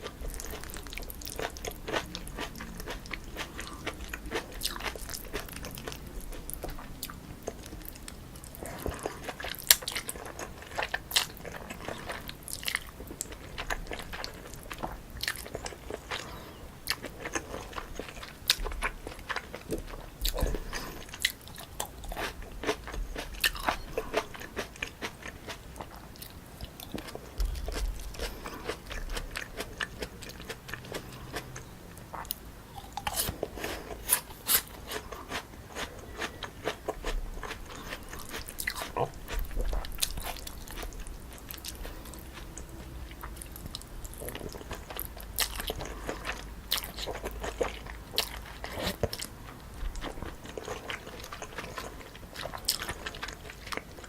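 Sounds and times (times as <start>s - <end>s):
chewing noodles: 0.0s - 54.0s
crunching crisp toppings: 0.0s - 54.0s.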